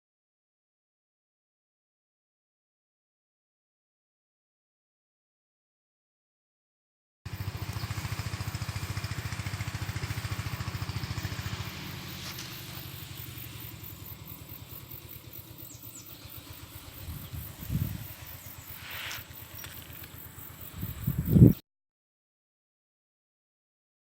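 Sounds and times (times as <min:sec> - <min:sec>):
small engine running: 0:07.3 - 0:21.6.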